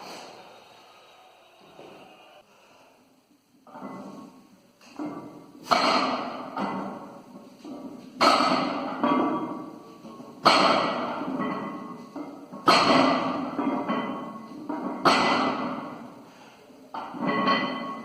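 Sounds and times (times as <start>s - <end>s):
barbell thudding on floor: 5.0s - 7.0s, 7.7s - 9.5s, 12.6s - 15.9s
metal plates clanking and ringing: 10.5s - 15.9s, 17.0s - 18.0s.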